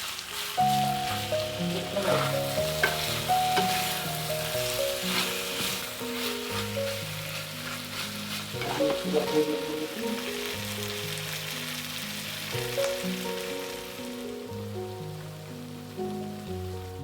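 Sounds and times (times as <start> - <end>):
food sizzling in a pan: 0.0 - 17.0
stepping melody: 0.5 - 11.6
stirring scrapes and clicks: 2.0 - 9.1.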